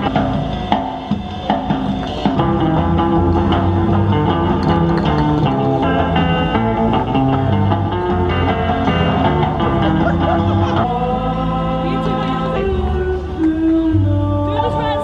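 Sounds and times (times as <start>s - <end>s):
electronic pop music: 0.0s - 15.0s.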